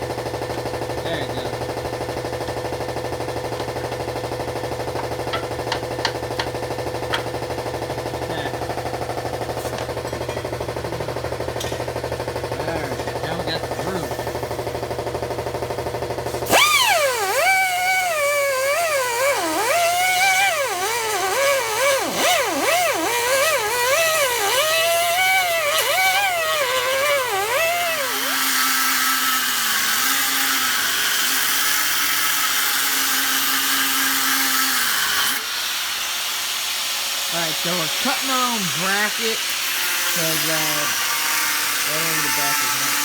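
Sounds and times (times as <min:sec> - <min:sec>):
power cutter whining through metal: 0:00.5 - 0:43.0
steady hissing cutting noise: 0:35.4 - 0:43.0.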